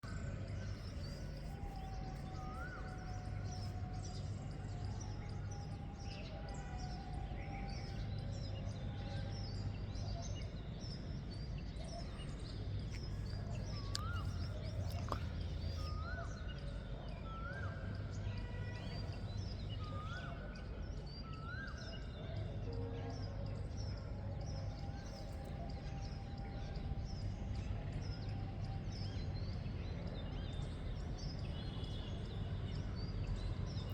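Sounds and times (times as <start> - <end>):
birds chirping and whistling: 0.6 - 5.8.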